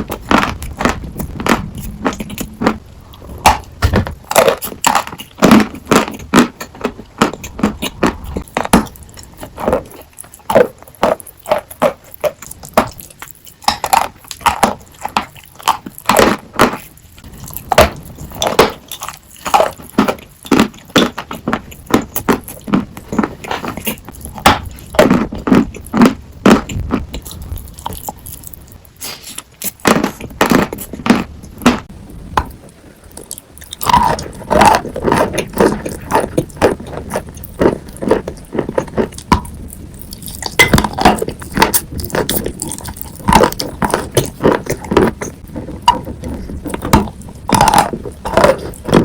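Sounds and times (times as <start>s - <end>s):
chalk being chewed: 18.9s - 29.9s, 33.1s - 49.0s.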